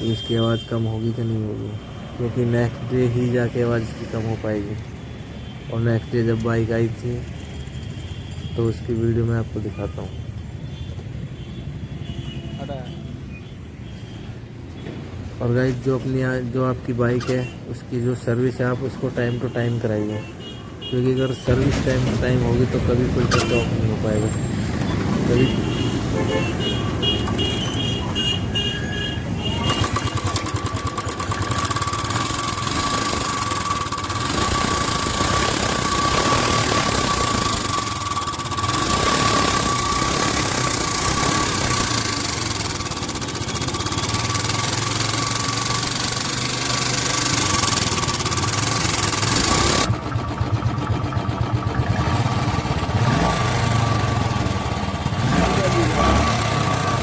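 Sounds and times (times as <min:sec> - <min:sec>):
motorcycle engine running: 0:29.5 - 0:57.0.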